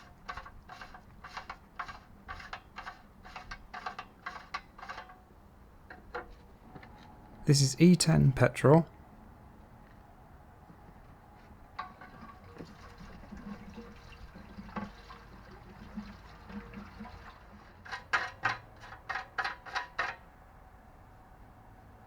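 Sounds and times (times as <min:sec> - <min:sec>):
petrol gurgling from a can: 0:11.8 - 0:18.3.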